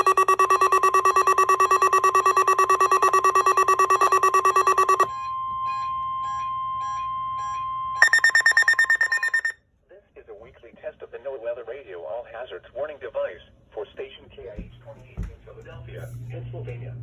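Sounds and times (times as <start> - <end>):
fast-pulsing electronic beep: 0.0 - 5.1, 7.4 - 9.5
slower faint beep: 0.0 - 9.5
steady warning alarm tone: 0.0 - 9.5.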